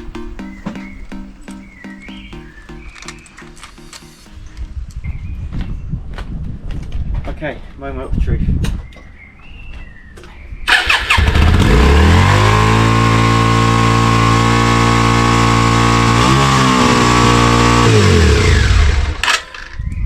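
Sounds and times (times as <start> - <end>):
motorcycle engine starting and idling: 10.7 - 19.8.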